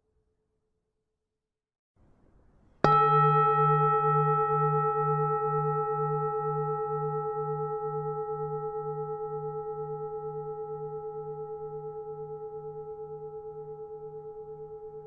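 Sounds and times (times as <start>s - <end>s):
temple bell ringing: 2.8s - 11.8s.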